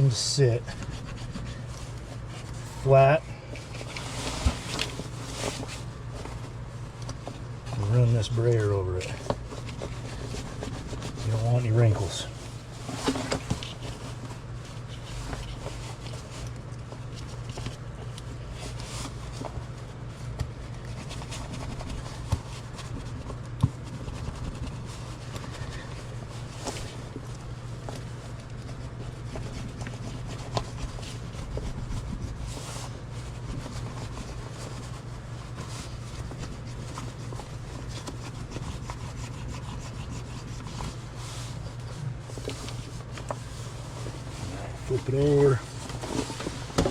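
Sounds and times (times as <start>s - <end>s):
steady low hum: 0.0s - 46.9s
hand brayer rolling and rubbing: 18.5s - 46.9s.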